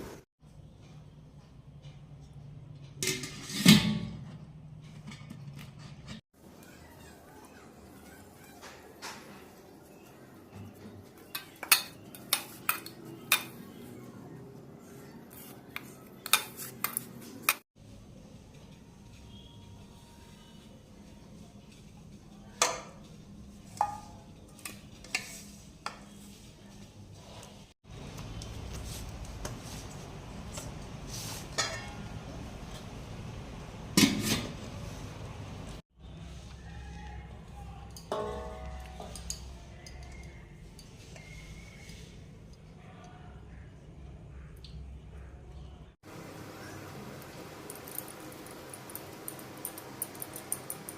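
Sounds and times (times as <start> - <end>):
metal utensil clinking on cookware: 11.1 - 13.7, 31.6 - 32.2, 37.9 - 41.3, 47.7 - 50.9
metal clang: 38.1 - 39.3.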